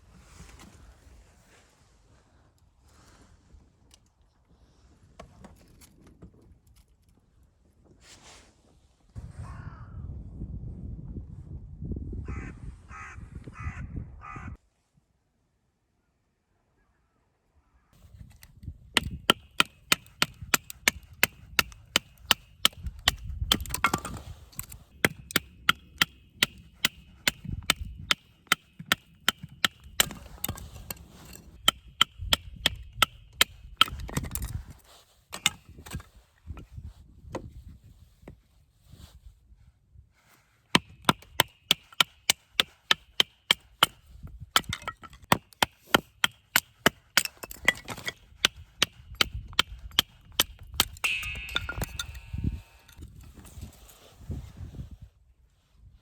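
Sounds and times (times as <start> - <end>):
rapid sharp striking blows: 50.8 - 53.0.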